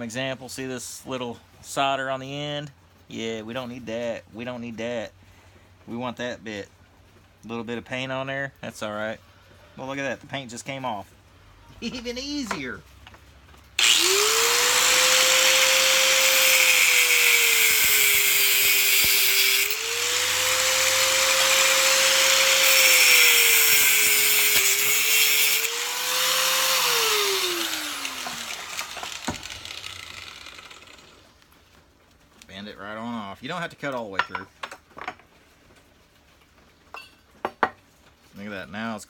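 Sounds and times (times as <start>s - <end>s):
angle grinder cutting metal: 13.8s - 31.3s.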